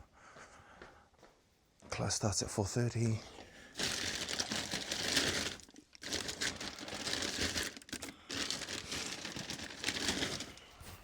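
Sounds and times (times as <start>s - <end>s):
crinkling and rustling handling: 3.4s - 11.0s.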